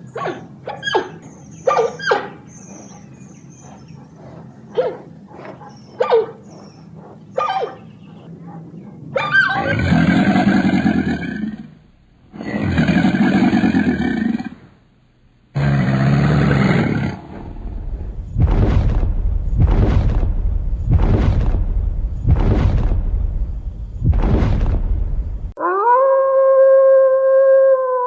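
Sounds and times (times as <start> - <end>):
animal yelping: 0.1 - 11.2
large animal roaring: 9.4 - 14.7, 15.6 - 18.2.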